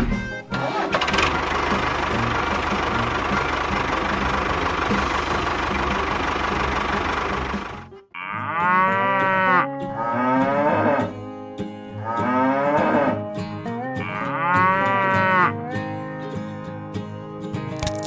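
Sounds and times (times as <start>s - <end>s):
cow mooing: 8.2s - 11.1s, 12.0s - 15.7s.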